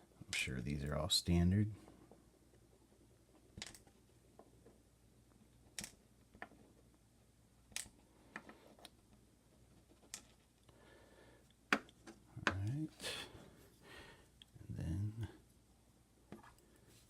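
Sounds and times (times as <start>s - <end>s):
small sharp clicks of lock parts: 5.8s - 6.0s, 7.7s - 7.9s.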